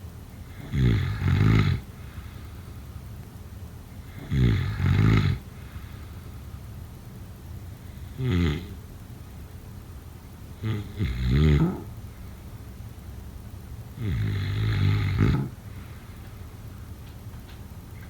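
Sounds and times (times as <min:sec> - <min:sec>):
person snoring: 0:04.1 - 0:05.5, 0:08.0 - 0:08.8, 0:10.6 - 0:11.9, 0:14.0 - 0:15.6.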